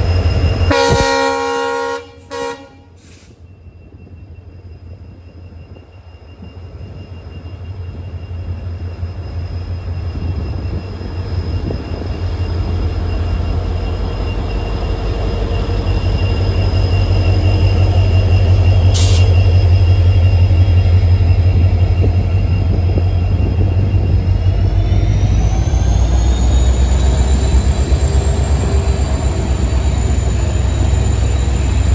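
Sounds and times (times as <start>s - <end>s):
brief hiss: 3.0s - 3.4s, 19.0s - 19.4s
locomotive engine deep drone: 11.6s - 31.9s.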